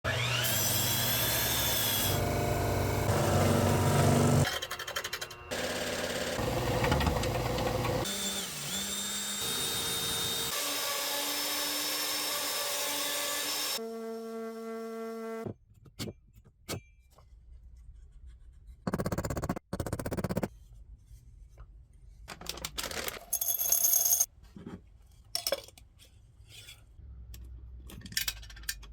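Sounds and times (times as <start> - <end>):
power tools cutting wood: 0.1 - 15.4.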